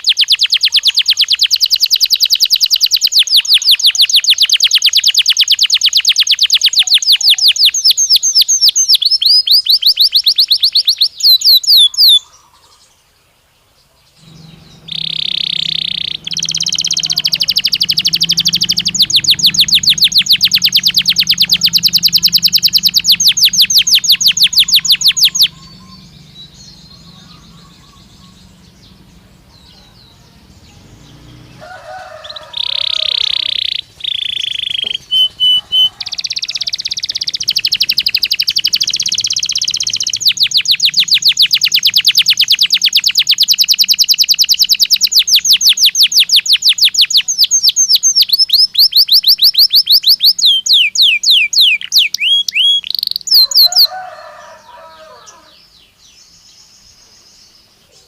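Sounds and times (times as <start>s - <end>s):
canary trilling: 0.0s - 12.6s, 14.2s - 55.6s
canary short pips: 14.2s - 30.4s, 32.3s - 53.9s
canary whistled notes: 14.4s - 28.9s, 32.6s - 53.9s.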